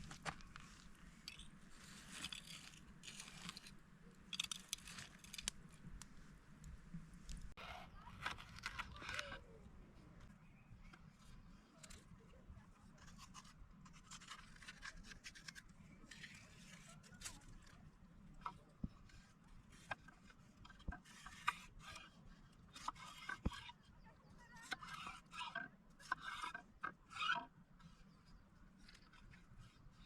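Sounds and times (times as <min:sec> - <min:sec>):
scraping and rubbing: 0:00.0 - 0:06.3, 0:18.5 - 0:30.0.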